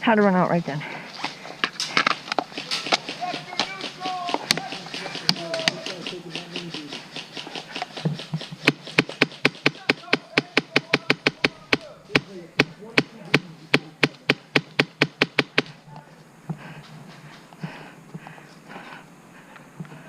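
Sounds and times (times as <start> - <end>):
faint distant voices: 1.9 - 14.8
airsoft gun firing: 2.0 - 15.8.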